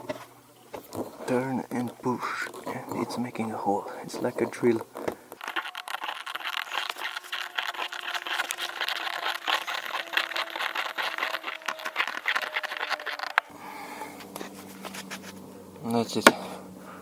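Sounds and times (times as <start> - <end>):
screw crackling and scraping plastic: 4.4 - 13.5.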